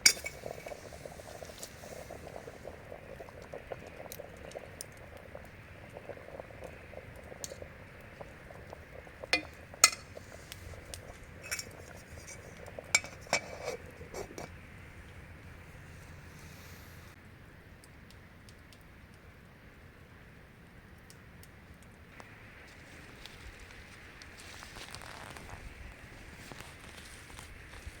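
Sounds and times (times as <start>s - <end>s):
metal utensils clinking on cookware: 0.0s - 0.4s, 11.4s - 12.4s
simmering bubbling: 0.0s - 17.2s.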